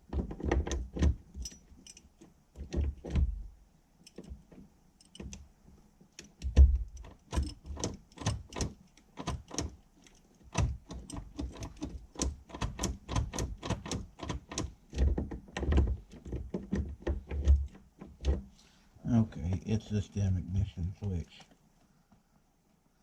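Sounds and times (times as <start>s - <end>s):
small clicks and knocks: 0.0s - 3.4s, 4.0s - 18.5s.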